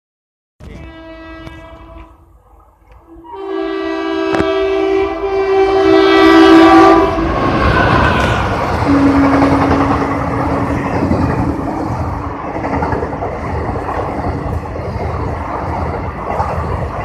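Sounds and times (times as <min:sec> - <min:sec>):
train horn blasts: 0:00.6 - 0:02.3, 0:03.0 - 0:08.2, 0:08.8 - 0:10.9
train rushing past: 0:02.8 - 0:17.0.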